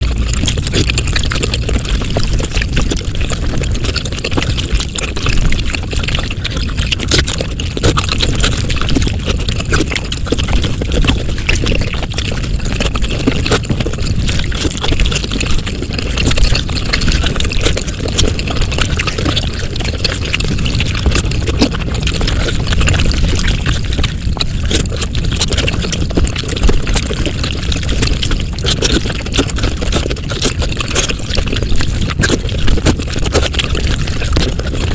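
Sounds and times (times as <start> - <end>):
sped-up eating sounds: 0.0 - 34.9.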